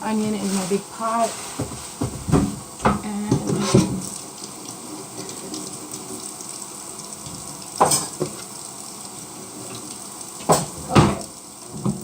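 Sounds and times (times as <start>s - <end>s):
onion sizzling in a pot: 0.0s - 12.0s
utensil knocking on pan: 1.6s - 4.0s, 10.4s - 11.3s.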